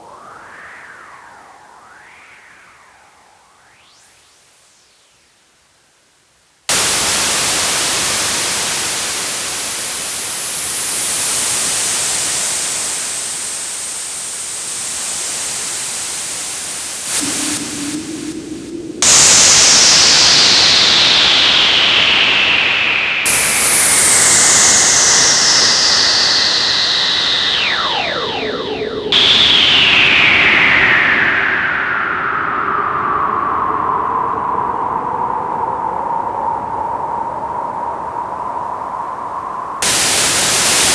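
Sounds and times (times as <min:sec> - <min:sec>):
whistling filter sweep: 0:00.0 - 0:05.0, 0:06.7 - 0:11.7, 0:17.1 - 0:40.9
synthesizer white noise: 0:06.7 - 0:14.4, 0:16.6 - 0:32.6, 0:39.8 - 0:40.9.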